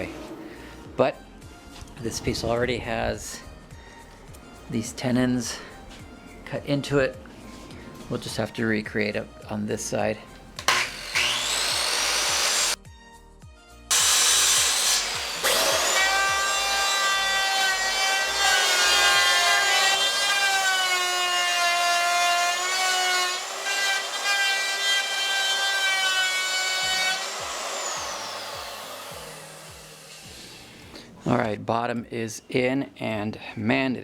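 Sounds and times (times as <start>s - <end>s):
electric saw cutting wood: 10.6s - 12.8s, 13.9s - 30.8s.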